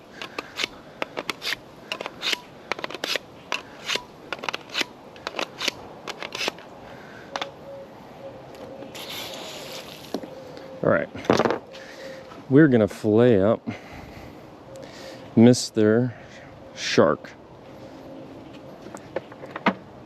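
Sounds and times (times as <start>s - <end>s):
objects clicking and knocking: 0.0s - 6.6s
faint steady hum: 0.0s - 20.0s.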